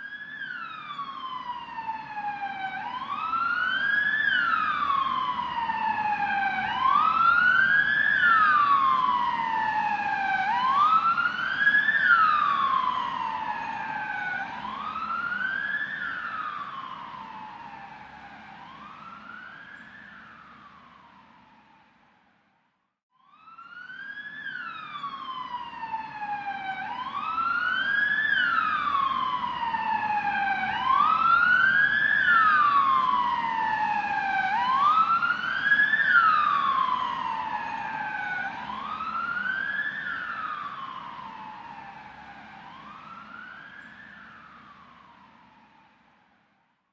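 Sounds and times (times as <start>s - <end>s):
ambulance siren wailing: 0.0s - 22.0s, 23.2s - 46.6s
low vehicle rumble: 23.8s - 45.9s.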